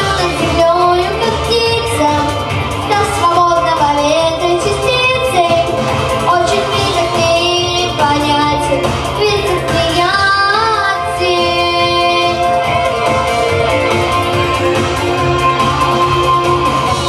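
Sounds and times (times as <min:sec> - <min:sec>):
young woman singing: 0:00.0 - 0:12.9
instrumental backing track: 0:00.0 - 0:17.0.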